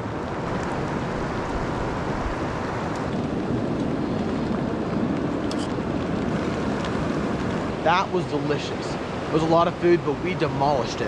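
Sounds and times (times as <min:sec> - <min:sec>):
heavy rain falling: 0:00.0 - 0:11.0
river rushing: 0:00.2 - 0:03.2.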